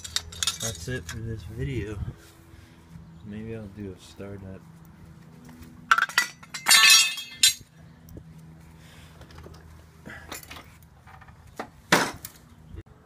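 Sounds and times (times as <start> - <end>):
objects clinking and rattling: 0.0 - 1.2, 5.9 - 7.6.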